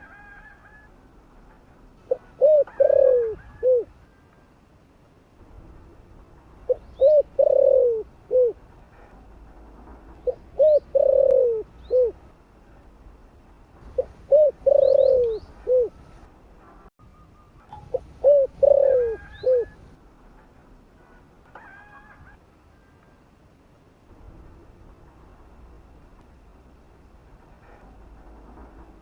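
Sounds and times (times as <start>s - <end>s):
dove cooing: 2.0s - 4.0s, 6.6s - 8.6s, 10.2s - 12.2s, 13.9s - 16.1s, 17.7s - 20.0s.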